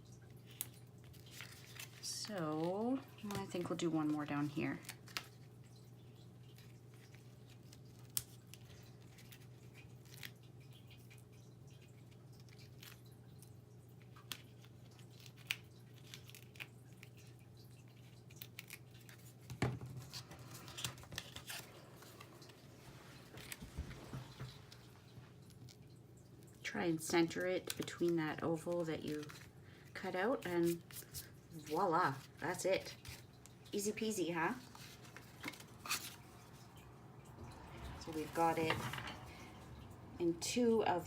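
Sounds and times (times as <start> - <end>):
paper clicks and rustles: 0.4 - 5.5, 6.2 - 25.9, 27.6 - 33.8.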